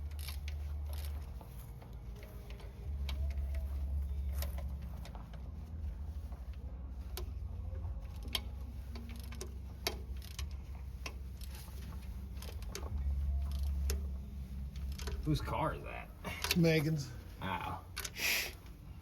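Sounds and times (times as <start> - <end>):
hand tools clicking on bolt: 0.0 - 1.4, 8.1 - 14.2, 14.8 - 15.4, 16.3 - 16.7
steady low hum: 0.0 - 19.0.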